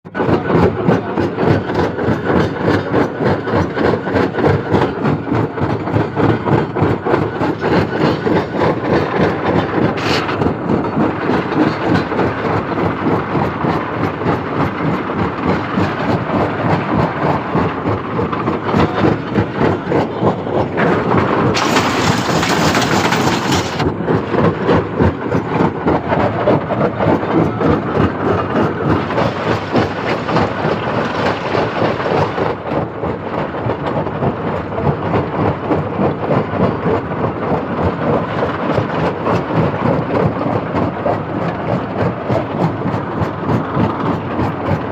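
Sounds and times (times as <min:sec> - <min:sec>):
stone crusher rumble: 0:00.2 - 0:33.0.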